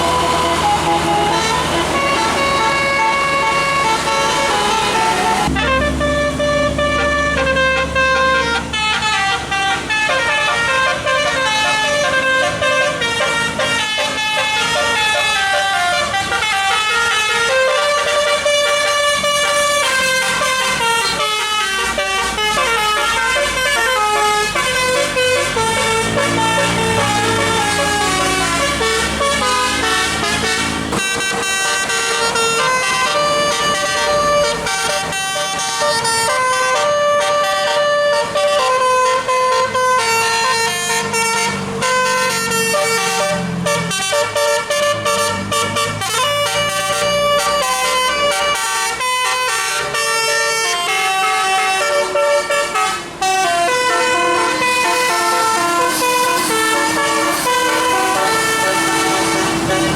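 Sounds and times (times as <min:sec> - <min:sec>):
multi-tone musical air horn melody: 0:00.0 - 0:59.9.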